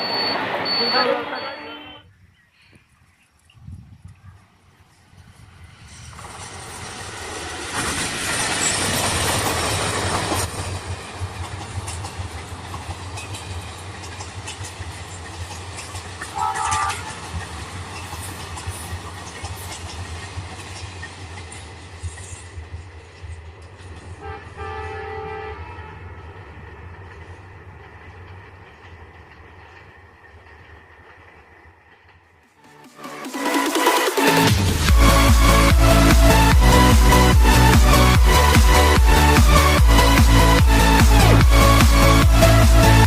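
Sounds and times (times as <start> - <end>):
passenger train running past: 0.0 - 2.1, 4.3 - 43.0
wheels clattering over rail joints: 6.0 - 24.2
train horn: 16.3 - 17.3, 24.2 - 26.3.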